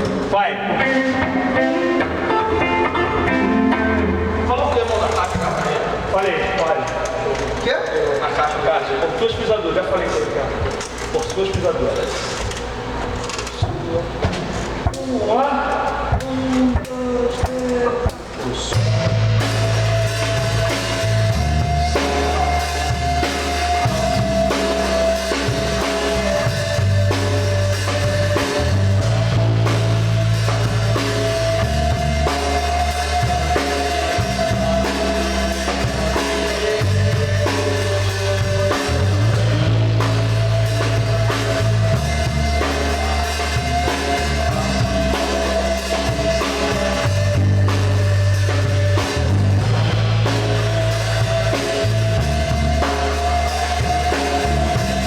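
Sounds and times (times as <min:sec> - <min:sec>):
bass line: 0:00.0 - 0:07.6, 0:10.4 - 0:55.0
drum kit: 0:00.0 - 0:55.0
held melody line: 0:00.7 - 0:06.2, 0:18.7 - 0:55.0.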